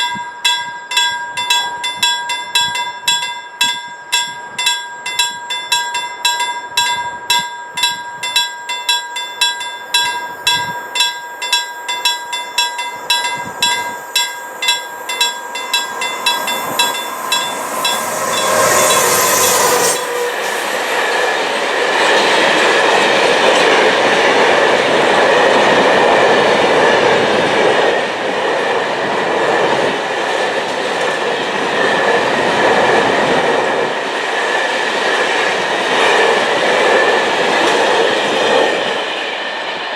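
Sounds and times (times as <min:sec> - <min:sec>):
level crossing warning bell: 0:00.0 - 0:21.2
train wheels rumbling on rail: 0:09.0 - 0:39.9
train brake screech: 0:12.9 - 0:22.6.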